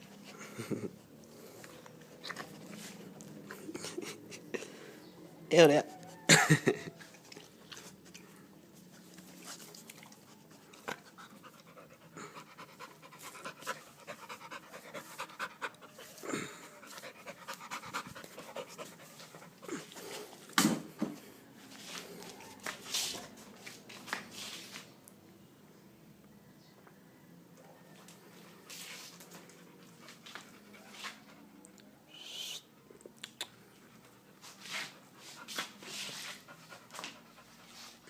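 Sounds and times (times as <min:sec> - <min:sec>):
dog panting: 0:09.2 - 0:20.4, 0:33.8 - 0:38.0.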